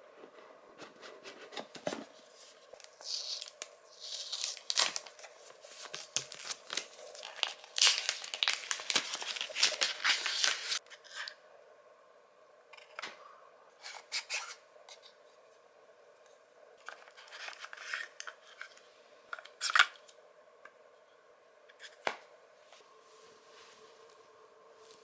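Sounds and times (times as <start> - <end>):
rustles and scrapes of handling: 0.0 - 11.4, 22.6 - 25.0.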